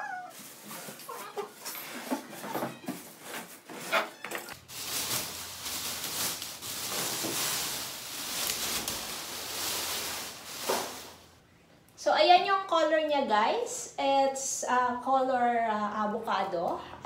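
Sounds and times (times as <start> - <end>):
rustling hiss of packing: 3.1 - 11.4.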